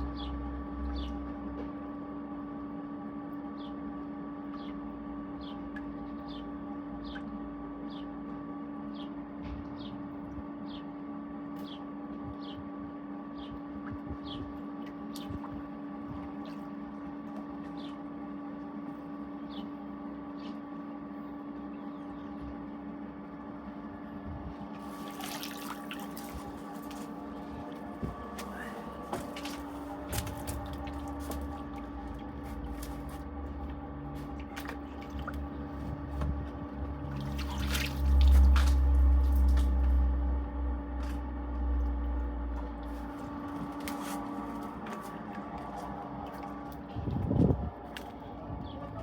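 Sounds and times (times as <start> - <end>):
pump motor humming: 0.0 - 49.0
moving water: 24.8 - 33.2, 34.0 - 36.1, 36.8 - 40.1.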